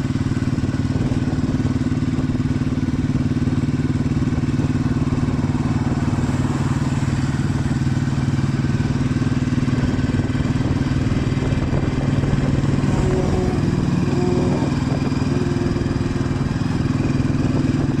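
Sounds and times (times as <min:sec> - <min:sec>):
motorcycle engine droning: 0:00.0 - 0:18.0.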